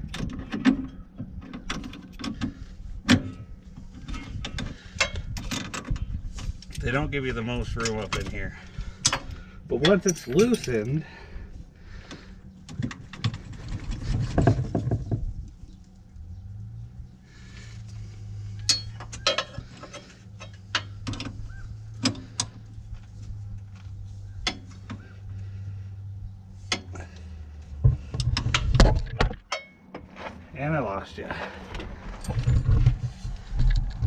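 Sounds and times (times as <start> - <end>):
steady low hum: 0.0 - 34.0
wrenches clinking on metal: 7.6 - 11.2, 18.6 - 22.6, 29.4 - 29.8.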